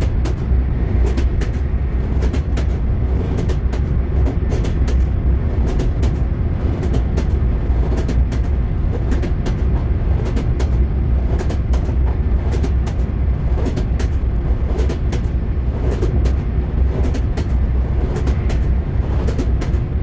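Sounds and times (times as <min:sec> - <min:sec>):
low rumble: 0:00.0 - 0:20.0
train wheels clattering on rails: 0:00.0 - 0:20.0.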